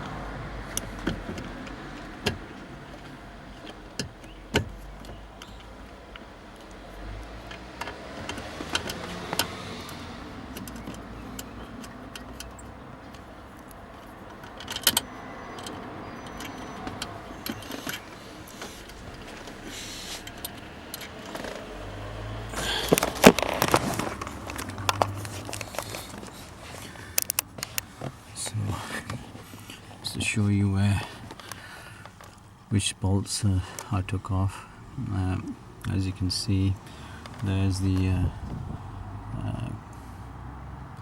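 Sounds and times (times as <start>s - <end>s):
rattling of fasteners: 7.4s - 15.0s, 22.5s - 30.1s
clicks and taps of hand work: 27.2s - 27.8s.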